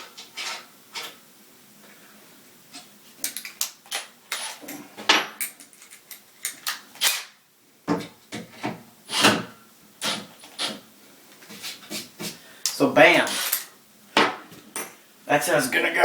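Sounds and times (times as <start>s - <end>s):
metal parts clanking: 13.2s - 13.7s.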